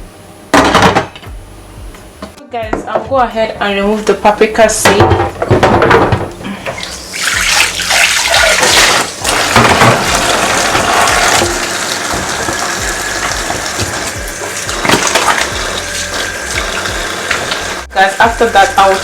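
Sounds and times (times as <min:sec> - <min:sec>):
tap running into sink: 0:04.9 - 0:17.8
water splashing: 0:06.8 - 0:19.0.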